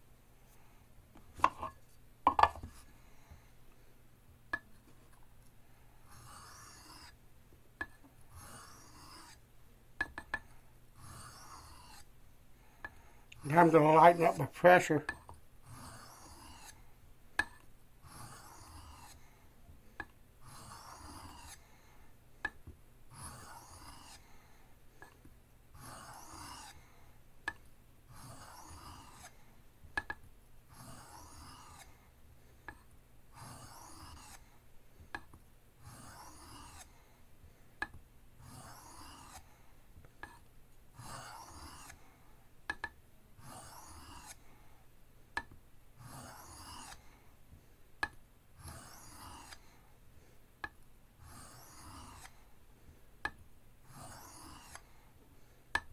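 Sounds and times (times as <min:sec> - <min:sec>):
knife strokes on sharpening stone: 0:01.4 - 0:02.9, 0:06.1 - 0:07.2, 0:07.8 - 0:09.4, 0:11.0 - 0:12.1, 0:15.6 - 0:16.8, 0:17.4 - 0:19.2, 0:20.4 - 0:21.7, 0:23.1 - 0:24.3, 0:25.8 - 0:26.8, 0:28.1 - 0:29.4, 0:30.7 - 0:32.0, 0:33.4 - 0:34.5, 0:35.8 - 0:36.9, 0:38.4 - 0:39.4, 0:41.0 - 0:42.0, 0:43.4 - 0:44.4, 0:46.0 - 0:47.1, 0:48.6 - 0:49.8, 0:51.2 - 0:52.4, 0:53.2 - 0:54.9.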